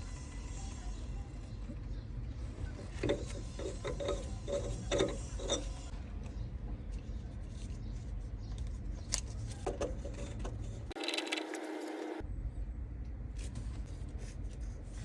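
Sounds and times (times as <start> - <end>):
plumbing fittings clicking and creaking: 2.9 - 5.8.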